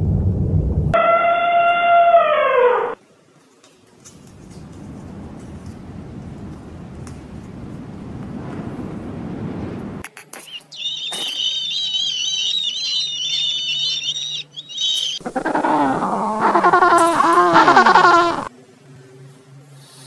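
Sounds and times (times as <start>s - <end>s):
animal call with wavering pitch: 1.0s - 3.0s, 10.7s - 18.5s
high warbling animal call: 1.0s - 3.0s, 10.5s - 18.5s
low roaring growl: 15.2s - 18.5s.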